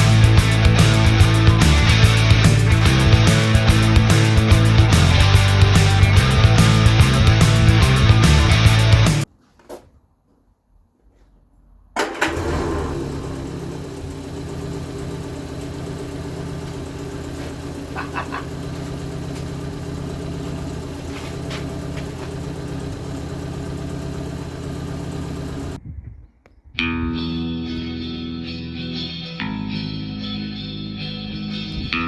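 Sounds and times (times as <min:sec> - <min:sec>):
car engine starting and idling: 0:00.0 - 0:09.3, 0:11.9 - 0:25.8.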